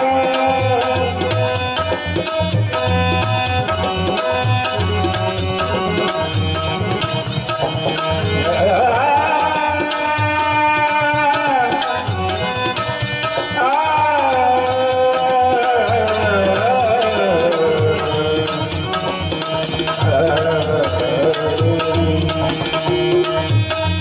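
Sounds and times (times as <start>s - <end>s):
long held melody line: 0.0s - 11.1s
tabla rhythm: 0.0s - 24.0s.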